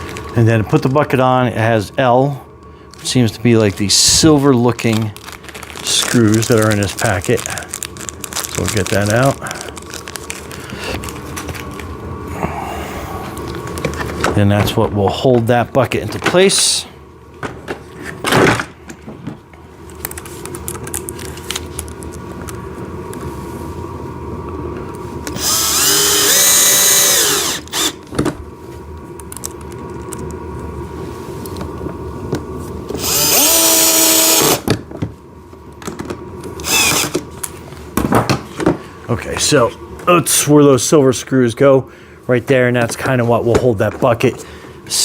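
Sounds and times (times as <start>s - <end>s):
power drill driving screws: 25.3s - 28.0s, 33.0s - 34.6s, 36.6s - 37.2s.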